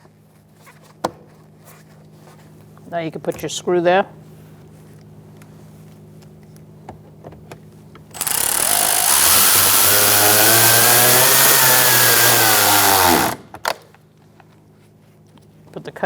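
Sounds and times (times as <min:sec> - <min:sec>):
cordless screwdriver whining: 0:08.2 - 0:13.4.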